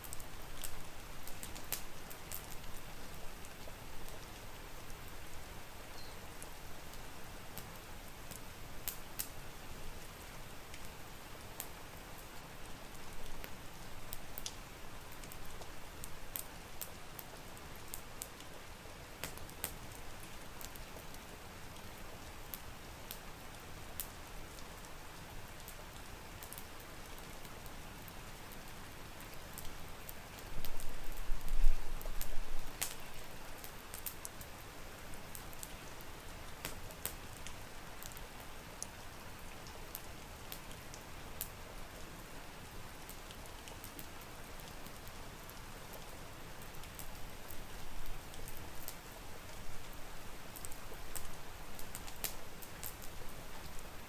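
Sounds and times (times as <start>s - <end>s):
steady rain: 0.0s - 54.0s
sharp crackles: 30.4s - 34.4s.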